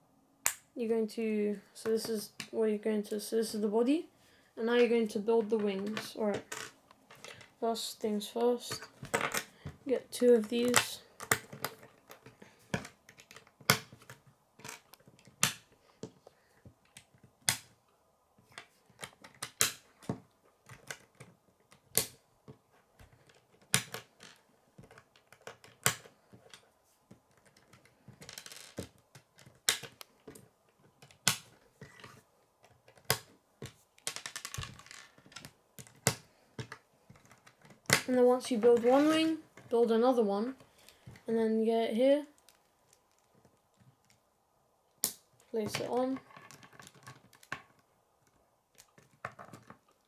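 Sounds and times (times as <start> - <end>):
plastic pieces clicking together: 23.0 - 39.7.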